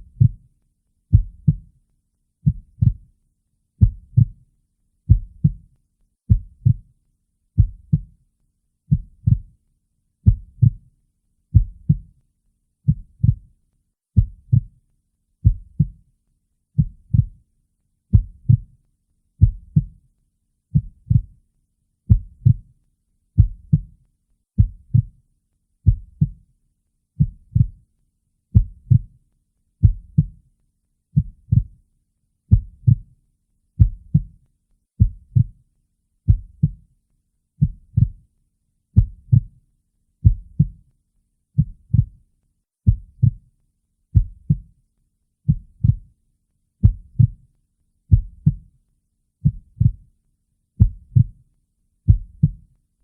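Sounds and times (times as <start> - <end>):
heartbeat lub-dub: 5.1 - 5.6, 6.3 - 6.8, 7.6 - 8.1, 10.3 - 10.8, 22.1 - 22.7, 23.4 - 23.9, 25.8 - 26.4, 28.6 - 29.1, 31.2 - 31.8, 32.5 - 33.1, 33.8 - 34.3, 35.0 - 35.5, 42.9 - 43.4, 44.2 - 44.6, 46.8 - 47.4, 48.1 - 48.6, 49.4 - 50.0, 50.8 - 51.4.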